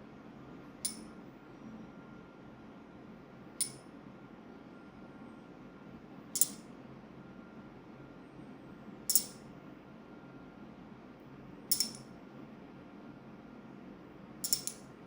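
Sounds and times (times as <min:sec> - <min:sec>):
metallic clinks: 0:06.4 - 0:06.6, 0:09.1 - 0:09.4, 0:11.7 - 0:12.1, 0:14.4 - 0:14.8.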